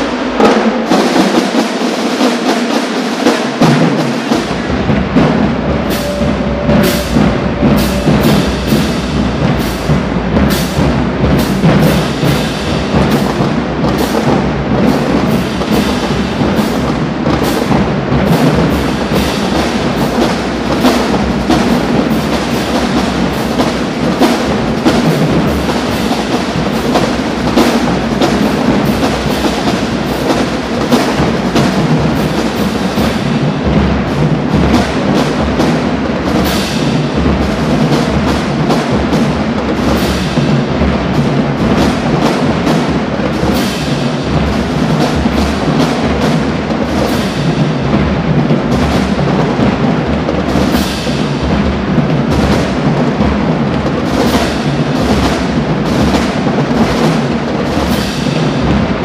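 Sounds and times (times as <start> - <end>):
marching drumline cadence: 0.0 - 59.0
deep bass drum hits: 4.4 - 15.3.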